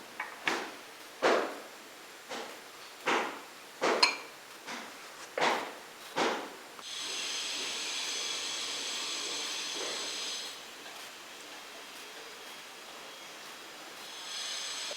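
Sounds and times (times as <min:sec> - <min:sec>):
high hiss with thin whine: 0:05.7 - 0:14.9.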